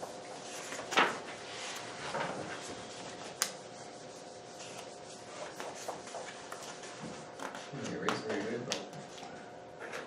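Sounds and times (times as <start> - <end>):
board eraser wiping: 0.0 - 7.9.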